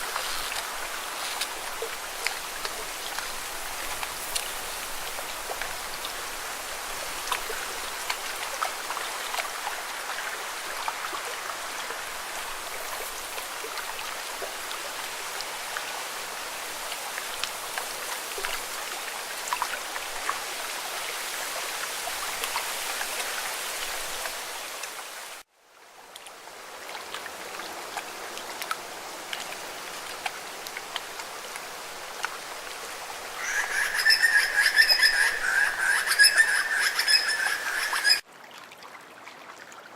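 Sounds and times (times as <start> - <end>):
high repeated chirping calls: 33.4 - 38.2.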